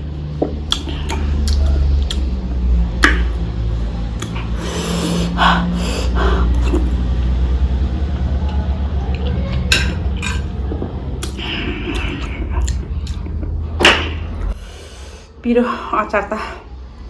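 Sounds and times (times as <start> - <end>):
steady low hum: 0.0 - 17.0
chewing food: 0.6 - 2.4, 4.2 - 4.6, 9.1 - 13.6
dishes clinking: 9.6 - 12.4.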